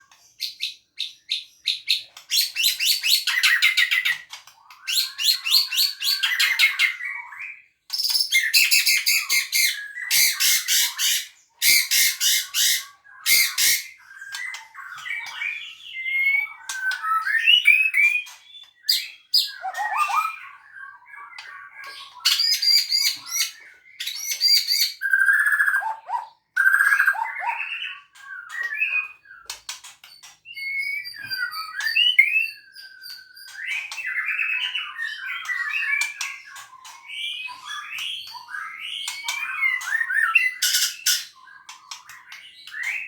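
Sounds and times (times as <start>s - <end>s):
songbird chirping and whistling: 0.1s - 43.0s.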